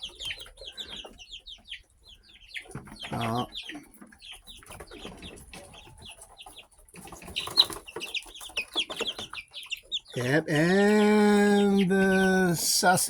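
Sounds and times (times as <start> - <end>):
chicken calling: 0.0 - 3.9, 7.2 - 13.0
young chickens peeping: 0.0 - 13.0.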